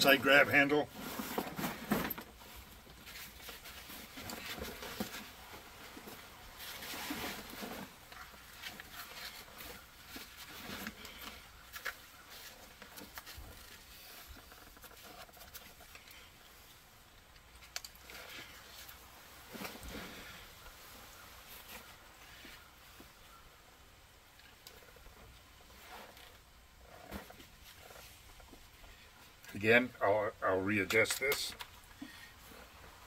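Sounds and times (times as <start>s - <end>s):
straps shuffling: 0.0s - 16.8s
fabric rustling: 0.1s - 16.8s.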